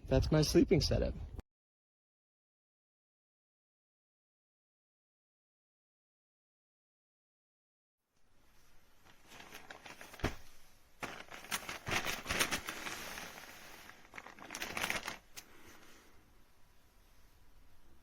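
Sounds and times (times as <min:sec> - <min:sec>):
faint rustling and handling: 0:08.2 - 0:17.5.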